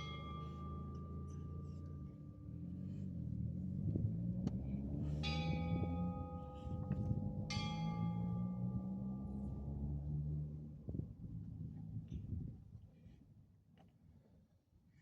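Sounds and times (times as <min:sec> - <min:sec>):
church bell tolling: 0:00.0 - 0:03.5, 0:05.2 - 0:10.6.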